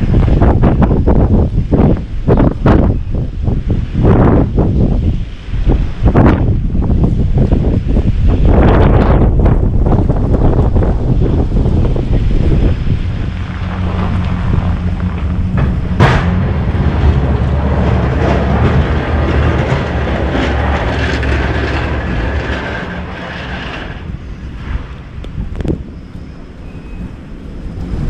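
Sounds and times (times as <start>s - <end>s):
rushing noise: 0.0s - 28.0s
vehicle engine running: 11.2s - 24.4s.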